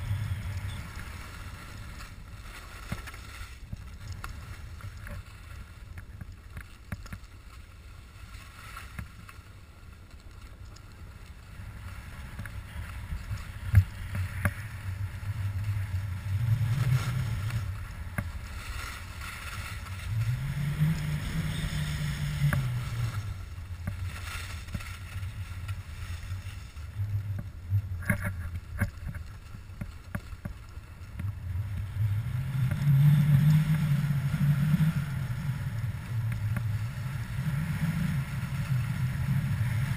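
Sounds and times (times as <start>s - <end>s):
wind buffeting microphone: 0.0s - 2.6s, 31.0s - 39.9s
low rumble: 0.0s - 39.9s
skis sliding on snow: 0.0s - 39.9s.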